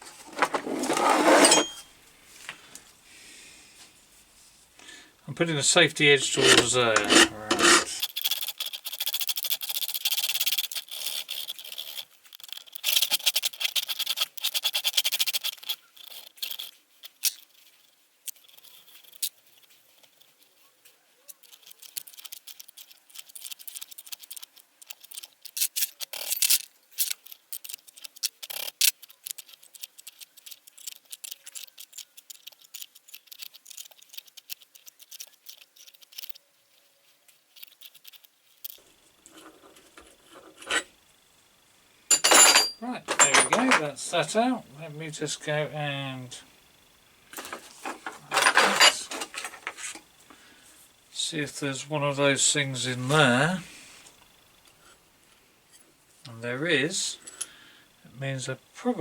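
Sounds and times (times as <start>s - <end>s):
hand file rasping on metal: 0.6s - 1.8s, 6.0s - 8.0s.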